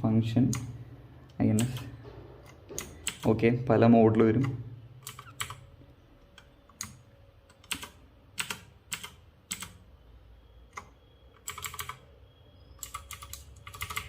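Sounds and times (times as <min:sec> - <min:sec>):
mechanical keyboard clicks: 0:01.6 - 0:01.9, 0:02.8 - 0:03.3, 0:04.4 - 0:05.6, 0:06.4 - 0:09.8, 0:10.7 - 0:12.0, 0:12.8 - 0:14.0.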